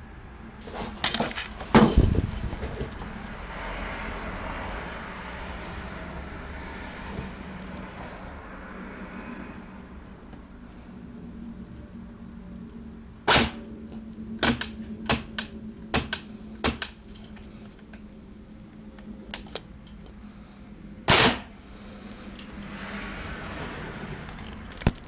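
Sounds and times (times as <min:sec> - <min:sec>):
airsoft gun single shots: 0:13.3 - 0:13.6, 0:21.1 - 0:21.5
airsoft gun bursts: 0:13.3 - 0:13.7, 0:21.1 - 0:21.5.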